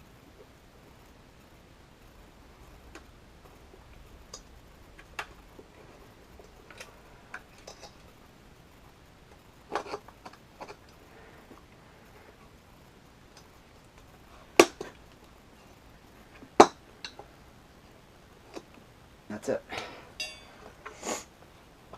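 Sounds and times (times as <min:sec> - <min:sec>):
metal tools knocking on wheel rim: 0:20.2 - 0:20.6.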